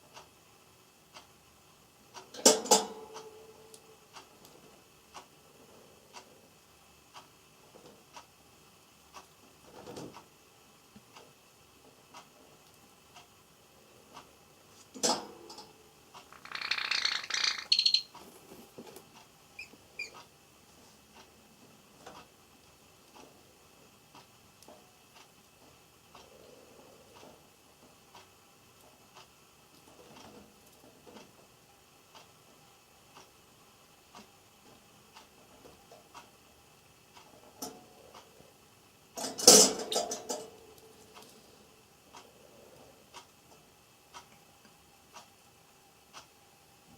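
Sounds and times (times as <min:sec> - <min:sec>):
bird pecking ticks: 0:15.0 - 0:20.3
bird call and chirps: 0:16.3 - 0:18.2, 0:19.6 - 0:20.2.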